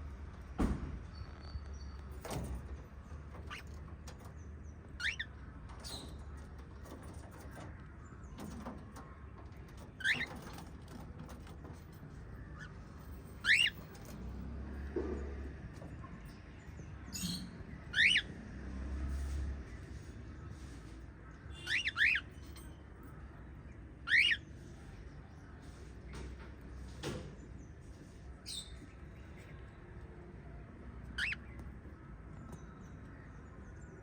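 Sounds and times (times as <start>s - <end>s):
parrots chirping: 4.8s - 5.4s, 12.6s - 13.8s, 17.1s - 18.3s, 21.5s - 22.7s, 24.0s - 24.5s, 31.1s - 31.6s.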